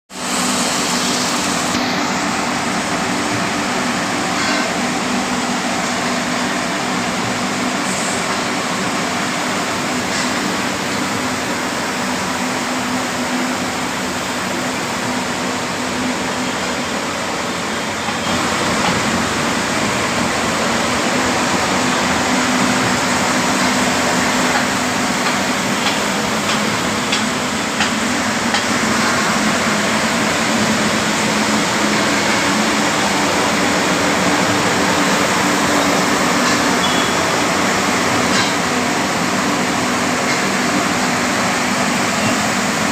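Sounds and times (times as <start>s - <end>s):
water spraying hiss: 0.2s - 2.2s.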